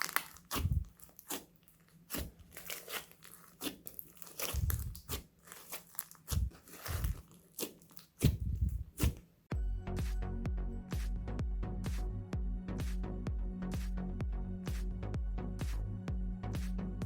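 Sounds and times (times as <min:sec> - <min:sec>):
slime kneaded clicking and crackling: 0:00.0 - 0:08.4
low slime squelch: 0:00.0 - 0:09.3.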